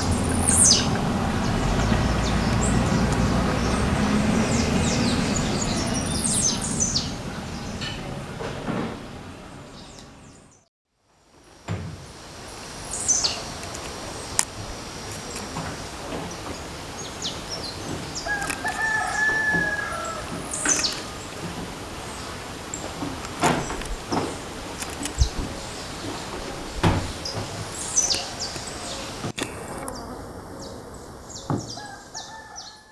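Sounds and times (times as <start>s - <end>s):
longer lower bird call: 0.0s - 8.5s, 12.5s - 23.1s
sharp knocks: 25.1s - 27.8s.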